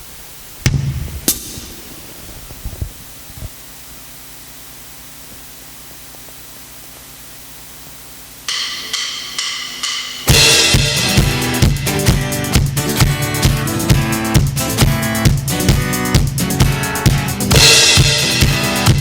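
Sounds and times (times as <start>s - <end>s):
drum kit with backing track: 0.6s - 3.5s, 8.5s - 19.0s
low thumps: 0.6s - 3.6s.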